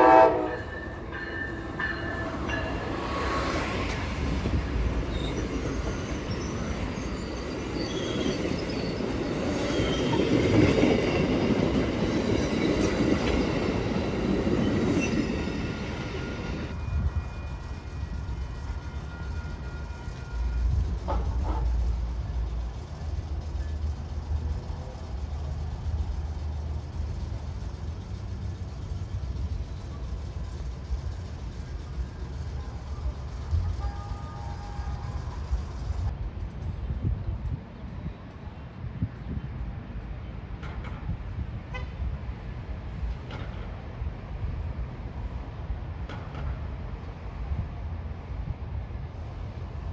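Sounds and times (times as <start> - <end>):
train rumbling on rails: 0.0 - 49.9
wheel squeals: 0.5 - 17.8.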